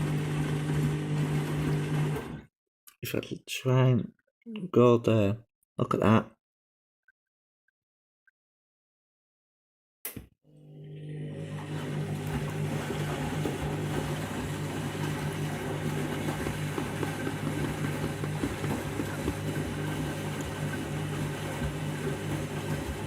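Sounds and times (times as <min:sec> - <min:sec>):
washing machine churning: 0:00.0 - 0:02.4, 0:10.7 - 0:23.0.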